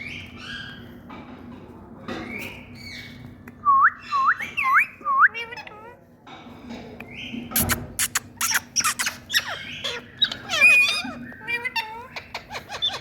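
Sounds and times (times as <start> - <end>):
parakeet chattering: 7.6 - 13.0.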